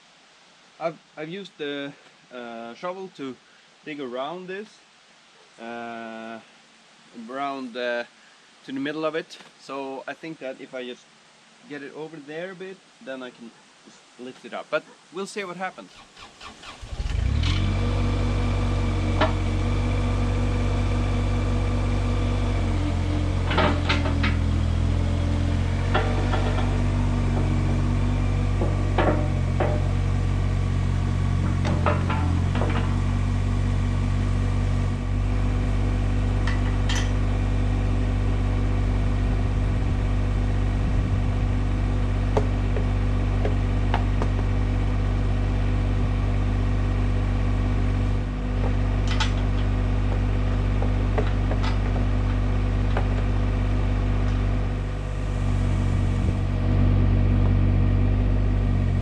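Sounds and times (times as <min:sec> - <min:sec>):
excavator diesel engine running: 0:16.8 - 0:59.0
sharp metal clanks and knocks: 0:28.6 - 0:30.0, 0:36.4 - 0:37.2.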